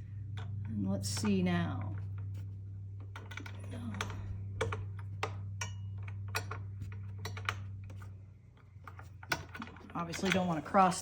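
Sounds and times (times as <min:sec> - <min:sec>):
steady low hum: 0:00.0 - 0:11.0
metal parts clicking and tapping: 0:00.3 - 0:11.0.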